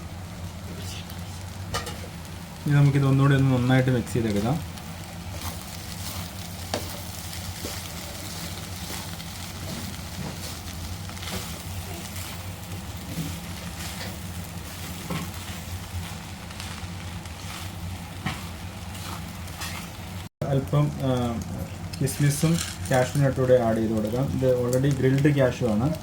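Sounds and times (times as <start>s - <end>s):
rice sizzling in a pan: 0.0s - 26.0s
ladle scraping a pan: 18.2s - 20.0s.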